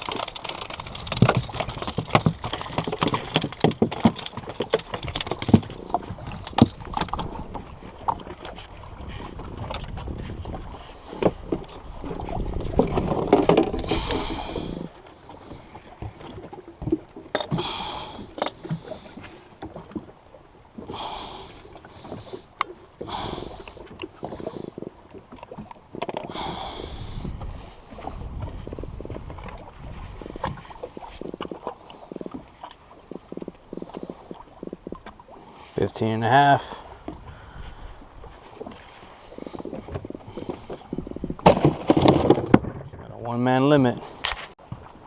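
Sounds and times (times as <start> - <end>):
sharp clicks and knocks: 0.0 - 7.3.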